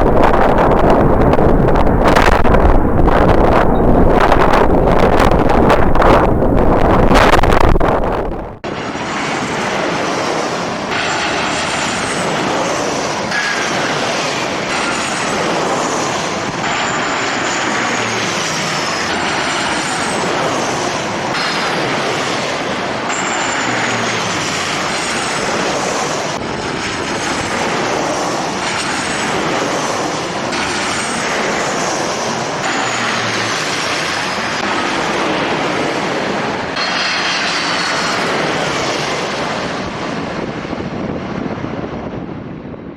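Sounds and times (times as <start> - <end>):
high whines gliding downward: 0.0 - 13.4
jet engines running: 0.0 - 42.9.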